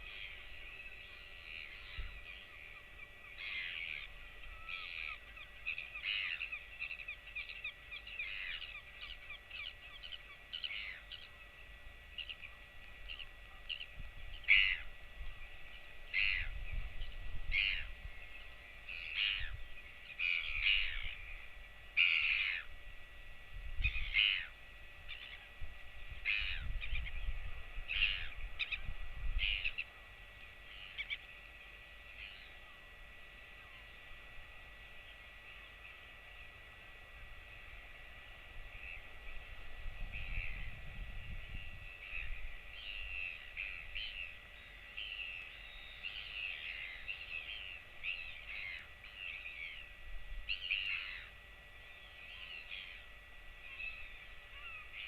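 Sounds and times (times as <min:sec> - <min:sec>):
sharp bird calls: 0:00.0 - 0:22.7, 0:23.8 - 0:25.5, 0:26.2 - 0:29.9, 0:30.6 - 0:31.3, 0:41.5 - 0:55.0
wind buffeting microphone: 0:39.4 - 0:42.7.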